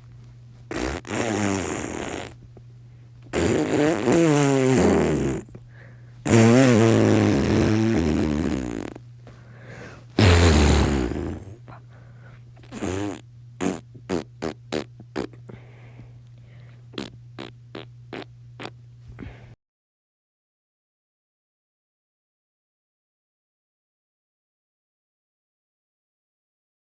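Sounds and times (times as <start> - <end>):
fart noises: 0.7 - 2.4, 3.3 - 5.6, 6.2 - 9.0, 10.2 - 11.6, 12.6 - 15.4, 17.0 - 18.8.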